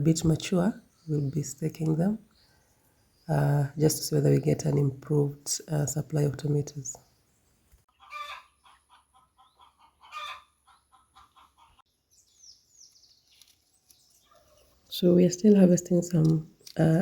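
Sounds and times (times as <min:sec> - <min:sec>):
chickens clucking: 0:07.9 - 0:11.8.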